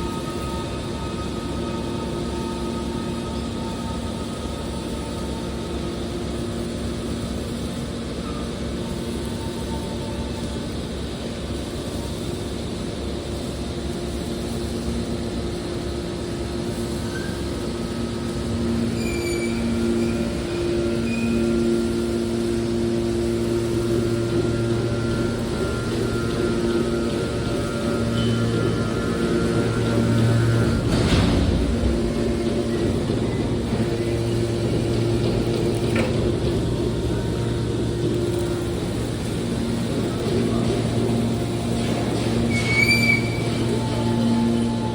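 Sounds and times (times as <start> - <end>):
baler machine hum: 0.0 - 44.9
short high squeaks: 18.8 - 21.8, 42.2 - 44.7.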